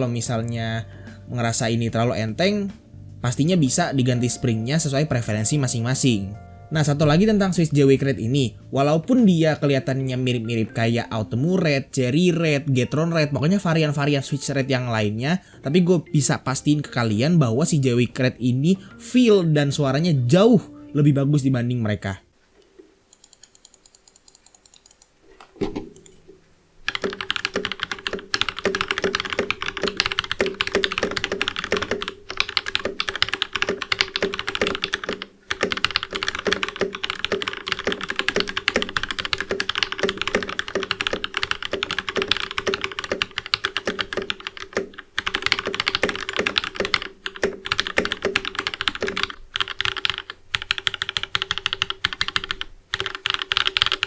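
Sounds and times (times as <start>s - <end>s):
fast mechanical keyboard typing: 23.1s - 25.0s, 26.9s - 54.0s.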